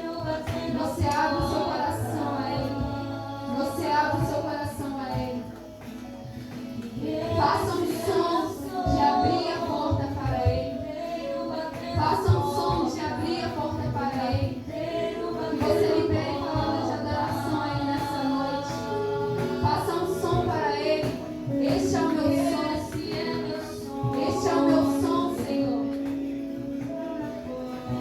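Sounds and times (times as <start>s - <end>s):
song with high singing voice: 6.5s - 28.0s.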